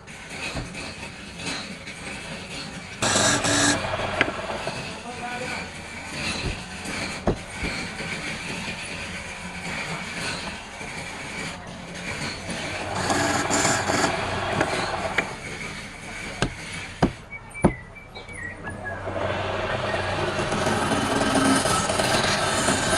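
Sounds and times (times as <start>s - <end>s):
cutting tool scraping wood: 0.0s - 17.8s, 18.6s - 22.9s
wood lathe humming: 0.0s - 22.9s
sharp knocks: 5.6s - 8.5s.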